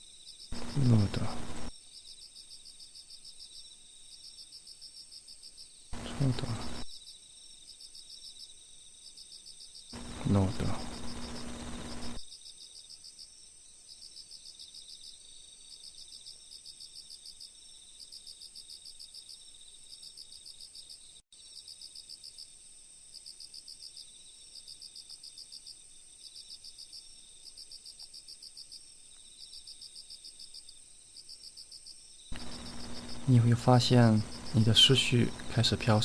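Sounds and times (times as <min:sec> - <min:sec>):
high continuous insect trill: 0:00.0 - 0:36.0
insects chirping in pulsed trains: 0:00.6 - 0:01.7, 0:06.0 - 0:07.4, 0:10.0 - 0:12.2, 0:32.4 - 0:36.0.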